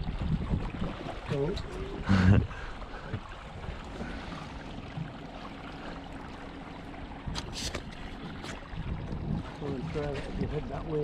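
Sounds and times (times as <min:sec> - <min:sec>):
boat engine humming: 0:00.0 - 0:11.0
water noise: 0:00.0 - 0:11.0
wind: 0:00.0 - 0:11.0.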